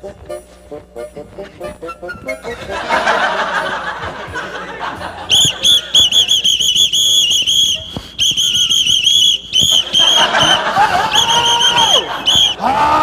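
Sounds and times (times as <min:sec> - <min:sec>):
shrill whistle blasts: 0:05.3 - 0:12.6.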